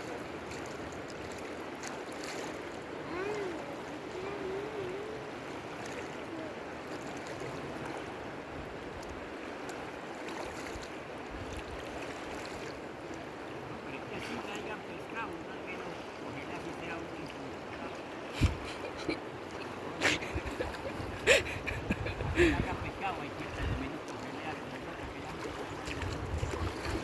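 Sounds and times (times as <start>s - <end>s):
river water flowing: 0.0s - 27.0s
person humming: 3.1s - 5.3s.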